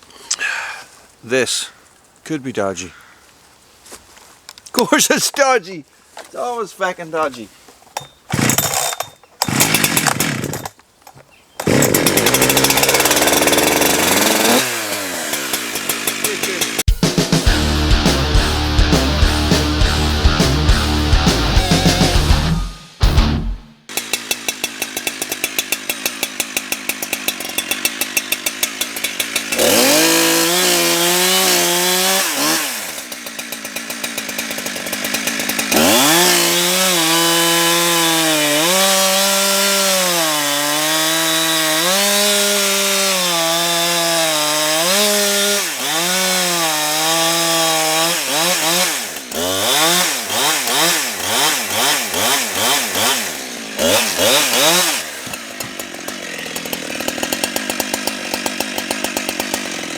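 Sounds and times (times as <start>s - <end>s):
chainsaw cutting logs: 7.9s - 11.0s, 11.6s - 16.9s, 23.8s - 59.9s
chainsaw throttle blips: 8.0s - 10.8s, 11.6s - 16.9s, 23.9s - 59.9s.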